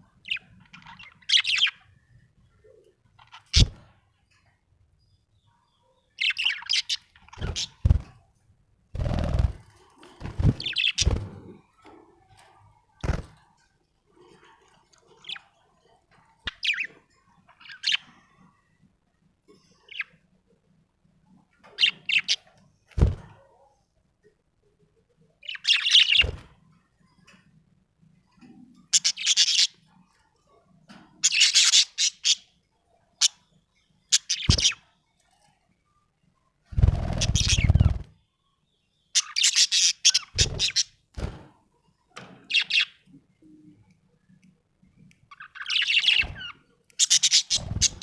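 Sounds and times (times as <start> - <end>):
budgerigar chirping: 37.1 - 38.0, 45.3 - 48.0.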